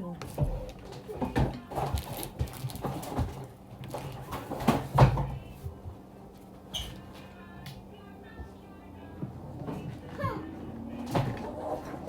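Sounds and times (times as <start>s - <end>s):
knocks of objects being handled: 0.2s - 5.5s.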